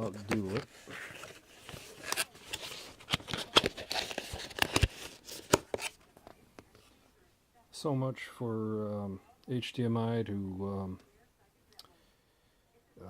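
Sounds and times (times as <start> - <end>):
packaging crinkling: 0.0 - 6.0.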